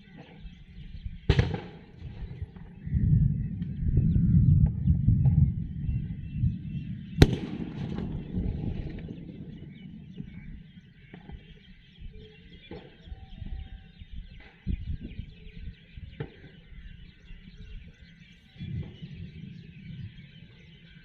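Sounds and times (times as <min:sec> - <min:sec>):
thunder clap and rumble: 0:01.0 - 0:13.6, 0:18.5 - 0:21.0.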